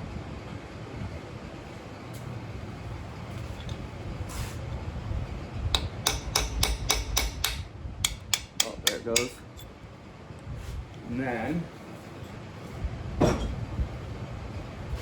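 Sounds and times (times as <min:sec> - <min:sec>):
steady low hum: 0:00.0 - 0:15.0
hammer striking metal punch: 0:05.7 - 0:09.7.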